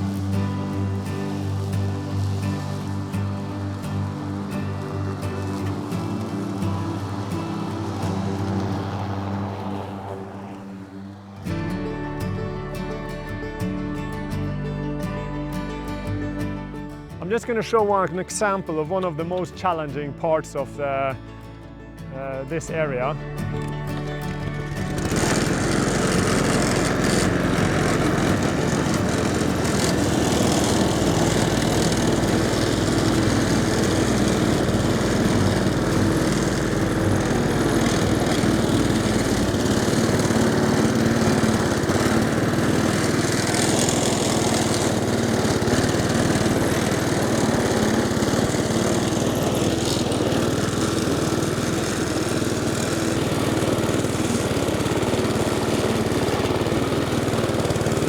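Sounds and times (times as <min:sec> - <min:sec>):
lawn mower cutting grass: 0:00.0 - 0:58.0.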